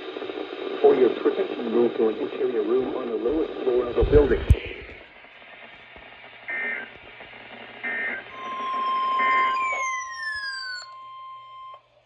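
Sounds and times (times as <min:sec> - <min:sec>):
falling whistle-like tones: 0:08.3 - 0:11.8
shrill warbling data bursts: 0:08.3 - 0:11.8.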